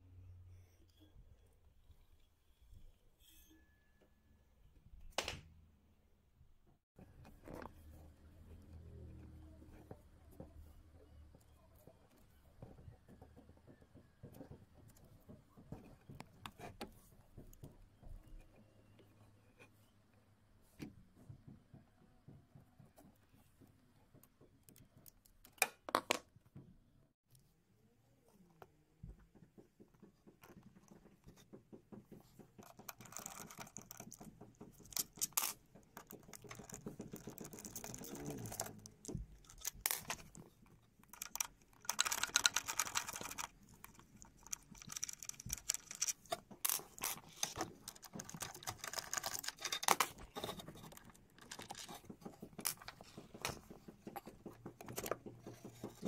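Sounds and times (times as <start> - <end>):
hands handling machine parts: 32.1 - 56.0.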